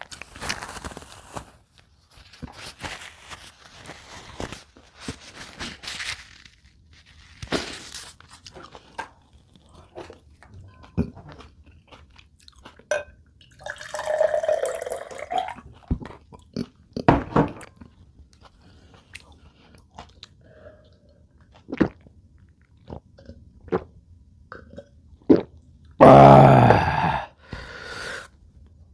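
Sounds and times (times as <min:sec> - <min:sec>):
food crunching: 0:02.3 - 0:12.9
person chewing: 0:08.3 - 0:12.9.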